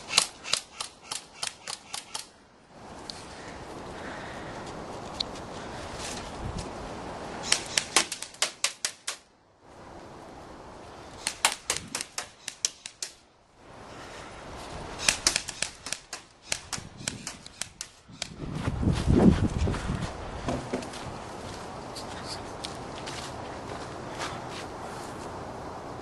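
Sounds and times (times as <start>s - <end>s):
wind noise on microphone: 2.7s - 8.0s, 9.7s - 12.2s, 13.6s - 26.0s.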